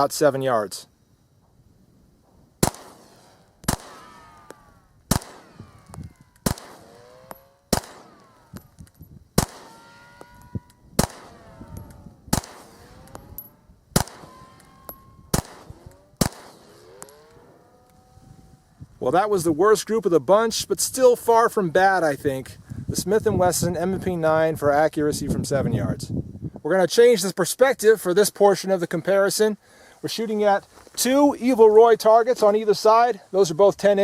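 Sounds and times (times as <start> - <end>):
pistol shots: 2.6 - 8.8, 9.4 - 17.5
faint metallic ringing: 3.2 - 18.8.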